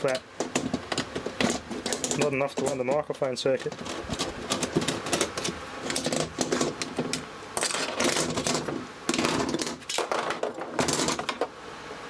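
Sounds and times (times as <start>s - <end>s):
small plastic parts clattering: 3.6s - 11.5s.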